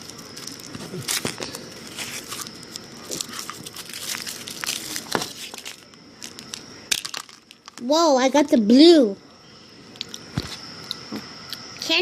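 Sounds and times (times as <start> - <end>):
foil wrapper crinkling: 0.0 - 7.8.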